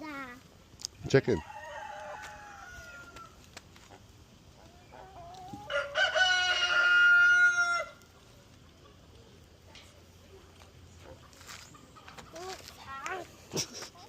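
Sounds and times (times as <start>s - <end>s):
rooster crowing: 1.4s - 3.4s, 5.6s - 8.0s.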